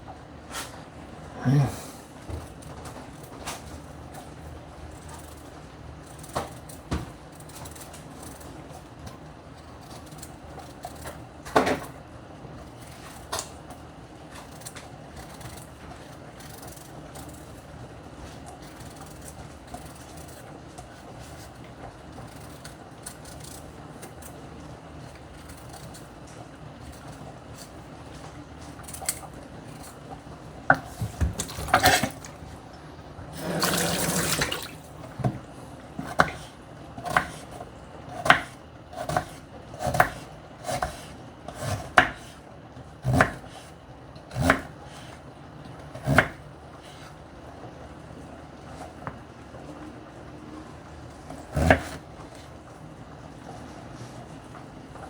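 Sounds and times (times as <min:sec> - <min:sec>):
knife chopping on cutting board: 0:30.7 - 0:32.3, 0:33.4 - 0:35.4, 0:36.0 - 0:42.4, 0:43.0 - 0:43.7, 0:44.3 - 0:45.2, 0:45.9 - 0:47.1, 0:51.4 - 0:52.0.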